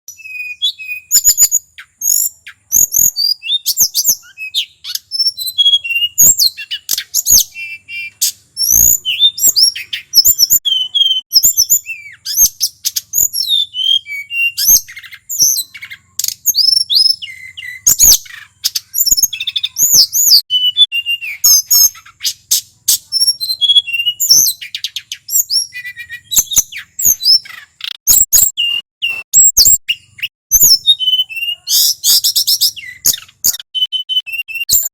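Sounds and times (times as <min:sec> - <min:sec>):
bird singing with trills: 0:00.1 - 0:34.9.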